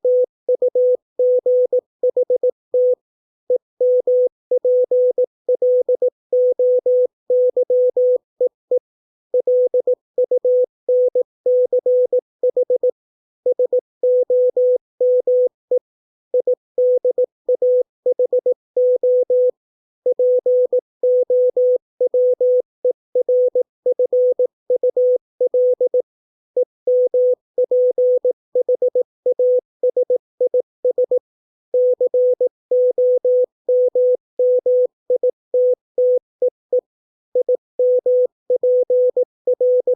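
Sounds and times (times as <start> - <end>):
morse code beeps: 31.8 - 36.8, 37.4 - 39.9.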